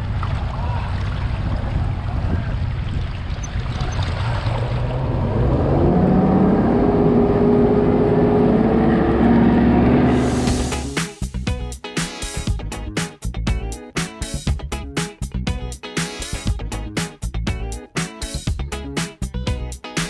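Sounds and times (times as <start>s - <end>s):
engine rumbling: 0.0s - 11.5s.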